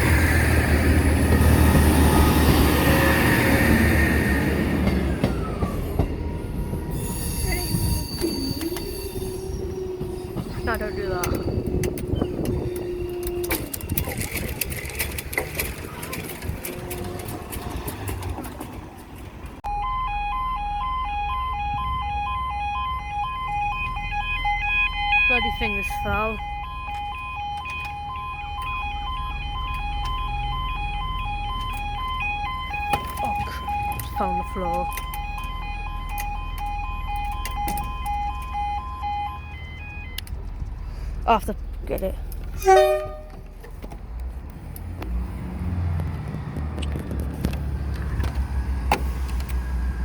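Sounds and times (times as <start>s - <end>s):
two-tone level crossing alarm: 19.6s - 40.3s.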